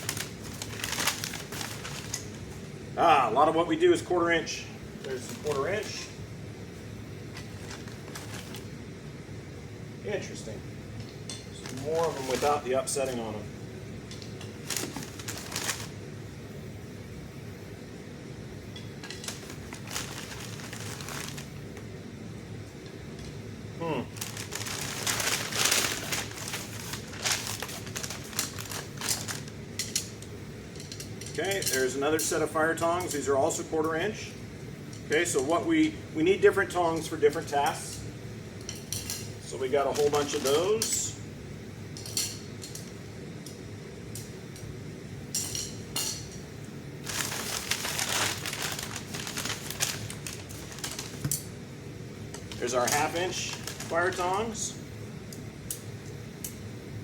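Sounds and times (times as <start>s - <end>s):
packaging crinkling and rustling: 0.0s - 2.6s, 5.0s - 6.1s, 7.3s - 8.7s, 11.5s - 13.1s, 14.2s - 16.0s, 19.0s - 21.6s, 24.2s - 30.1s, 39.0s - 40.9s, 47.0s - 51.5s, 52.3s - 54.6s
metal tongs clinking: 45.3s - 46.4s.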